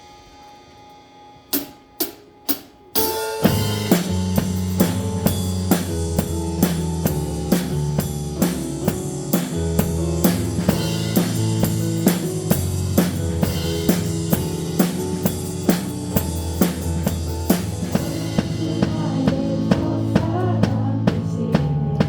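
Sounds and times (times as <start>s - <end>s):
drum kit playing: 0.0s - 22.0s
band bass and chords: 1.5s - 22.0s.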